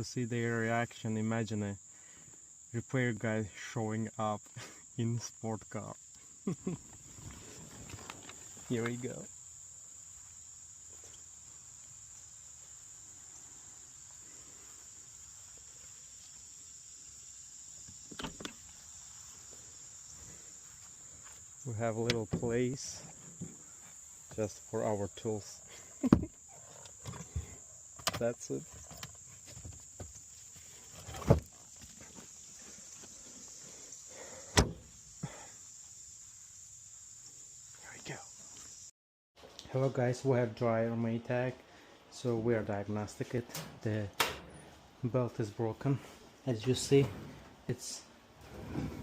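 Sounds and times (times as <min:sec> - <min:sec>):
crickets chirping: 0:00.0 - 0:39.0, 0:40.2 - 0:49.0
car door shutting thump: 0:34.5 - 0:34.9.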